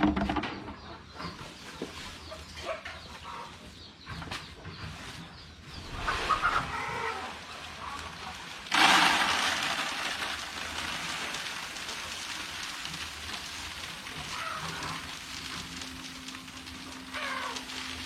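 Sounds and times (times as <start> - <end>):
chicken calls: 0.4 - 11.4, 13.8 - 18.0
rain-like hiss: 5.8 - 18.0.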